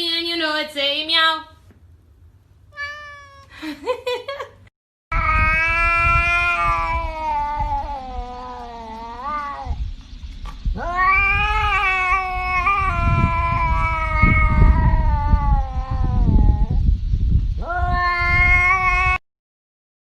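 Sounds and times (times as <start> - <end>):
cat yowling: 2.7 - 3.5, 5.2 - 9.8, 10.8 - 16.8, 17.6 - 19.2.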